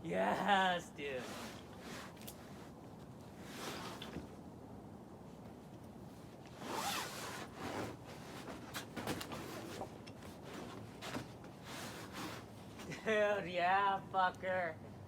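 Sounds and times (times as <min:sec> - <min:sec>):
scraping and rustling on rock: 0:01.2 - 0:04.4, 0:06.4 - 0:13.0.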